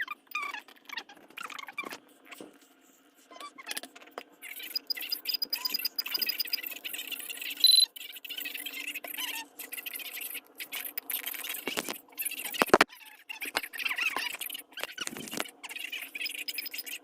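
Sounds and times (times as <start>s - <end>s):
button clicks and scratches: 7.6s - 7.9s
loud high-pitched beep: 7.6s - 7.9s.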